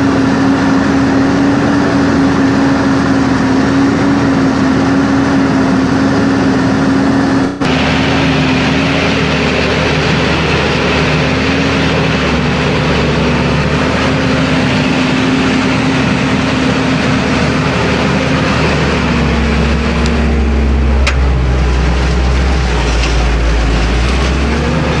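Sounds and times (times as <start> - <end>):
deep rumble: 0.0 - 25.0
tractor engine under load: 0.0 - 25.0.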